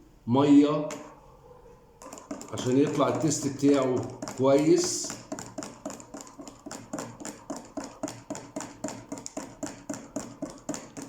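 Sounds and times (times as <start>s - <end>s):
spoon clinking against cup: 2.0s - 10.8s.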